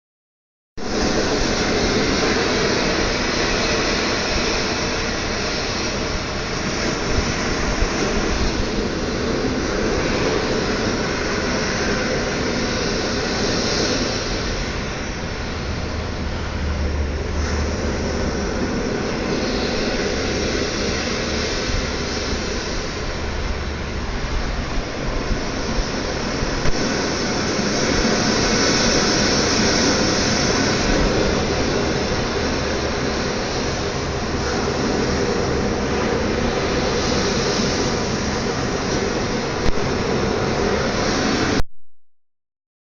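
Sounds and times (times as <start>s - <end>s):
ocean waves washing: 0.8s - 41.6s.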